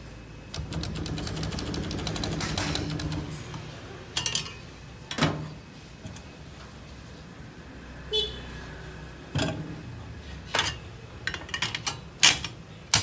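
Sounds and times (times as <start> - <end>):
typewriter clicking: 0.5 - 5.4, 10.5 - 13.0
typewriter key strikes: 0.5 - 5.4, 10.6 - 13.0.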